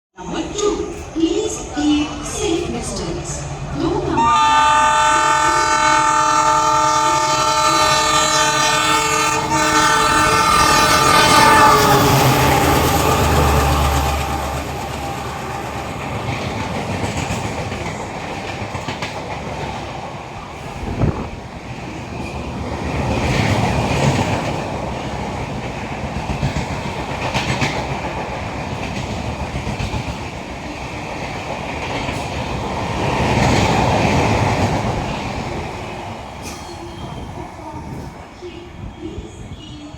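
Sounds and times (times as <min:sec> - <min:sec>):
diesel locomotive engine chugging: 0:00.2 - 0:18.9
train coaches clattering over rails: 0:00.2 - 0:39.9
locomotive horn blast: 0:04.2 - 0:16.1.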